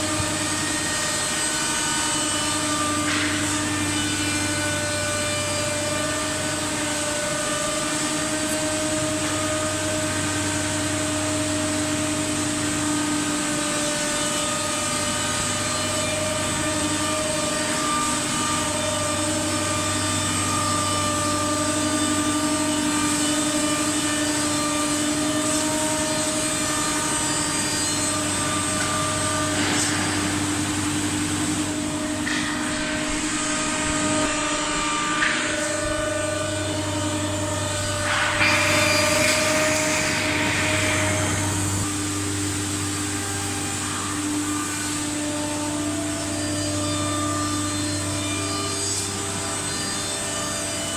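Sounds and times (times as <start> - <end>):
router spindle whining: 15.4 - 44.2
machining hiss: 25.4 - 45.2.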